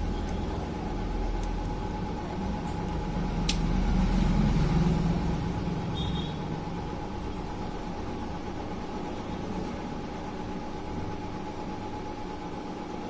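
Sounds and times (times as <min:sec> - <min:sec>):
machine hum: 0:00.0 - 0:13.0.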